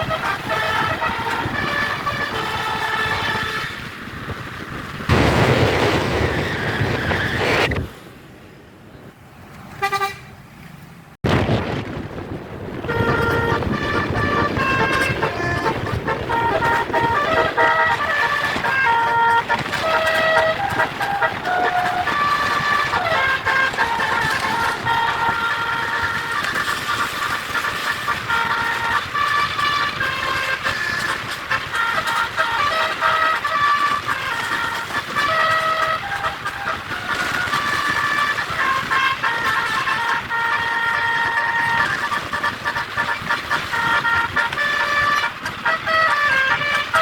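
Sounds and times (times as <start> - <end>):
musical horn playing a tune: 0.0 - 4.0, 12.8 - 47.0
bus horn toot: 0.0 - 4.2, 9.7 - 10.4, 12.8 - 47.0
loud rush of noise: 3.8 - 8.6, 11.2 - 28.2.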